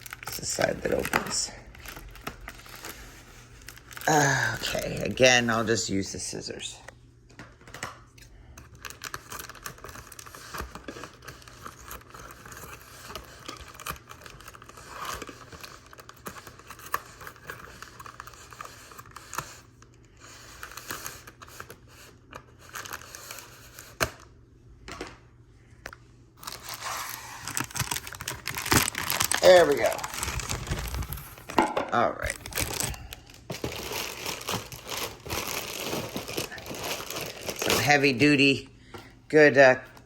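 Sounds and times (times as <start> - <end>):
tape and packaging tearing: 26.4 - 31.6, 32.2 - 38.1.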